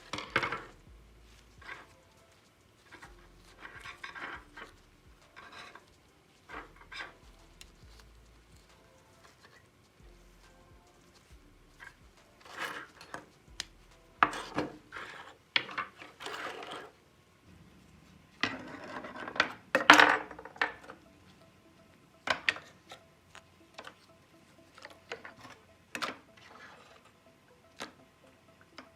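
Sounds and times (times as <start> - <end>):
small parts clicking: 0.0 - 16.9
scraping and rubbing: 0.0 - 21.0.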